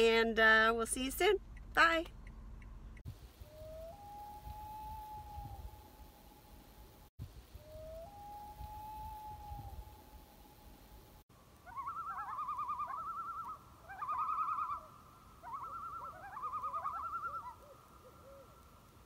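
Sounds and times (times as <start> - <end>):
loon tremolo call: 11.6 - 18.4.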